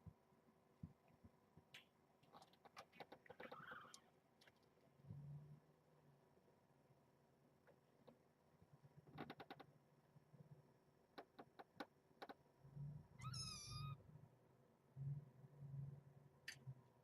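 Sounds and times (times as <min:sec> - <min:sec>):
faint clicks: 0:01.0 - 0:04.9
kitten meowing: 0:13.2 - 0:14.0.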